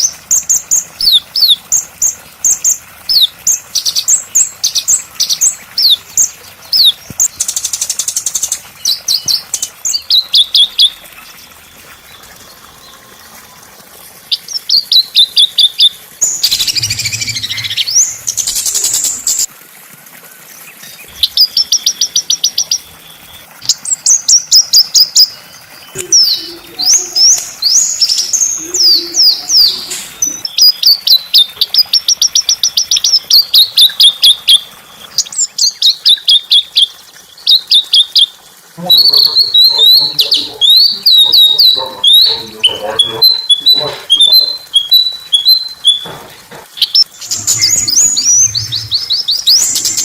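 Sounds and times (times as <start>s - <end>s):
songbirds chirping: 0.4s - 19.5s, 25.2s - 32.0s, 32.6s - 50.0s
bird rattling trills: 14.7s - 19.5s.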